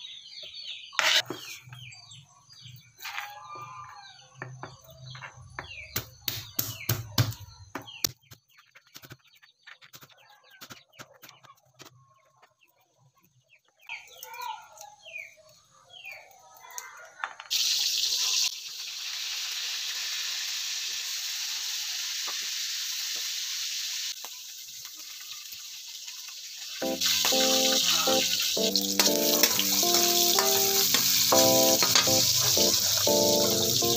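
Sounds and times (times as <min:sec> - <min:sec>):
chickens clucking: 0:26.8 - 0:33.9.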